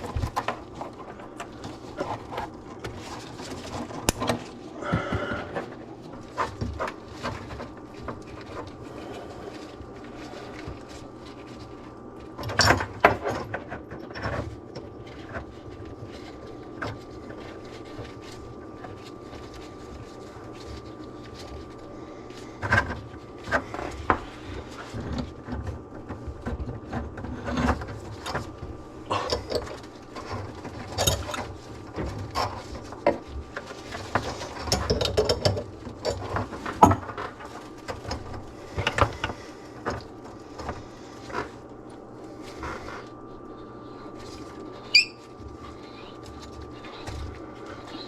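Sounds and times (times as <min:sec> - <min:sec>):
tools and pipe fittings rattling: 0:29.1 - 0:40.0.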